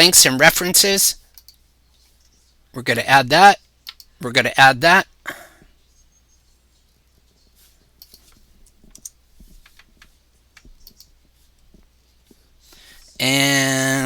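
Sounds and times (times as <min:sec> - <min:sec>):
keyboard and mouse clicks: 0:01.3 - 0:01.6, 0:03.8 - 0:04.1, 0:08.0 - 0:11.2.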